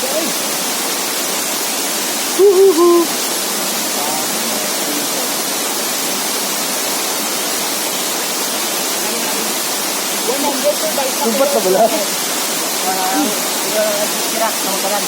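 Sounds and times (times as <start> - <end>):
waterfall rushing: 0.0 - 15.0
short voice: 2.4 - 3.1.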